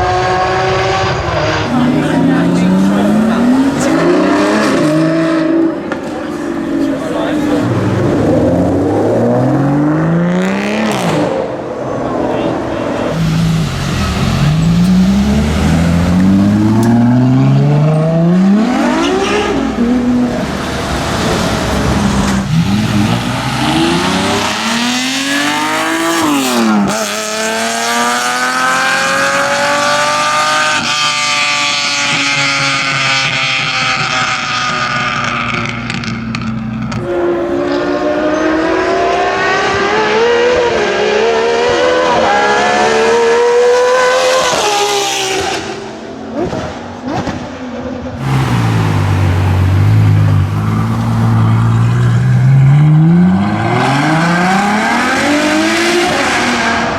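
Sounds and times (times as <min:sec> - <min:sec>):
car engine accelerating through gears: 0:13.0 - 0:47.5, 0:48.2 - 0:56.9.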